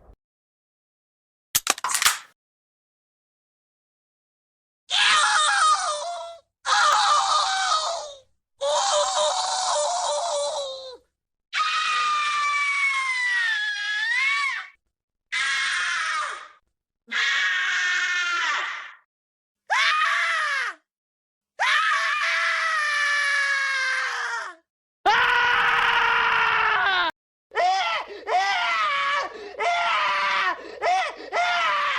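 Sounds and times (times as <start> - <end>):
high-pitched screaming cries: 25.1 - 31.9.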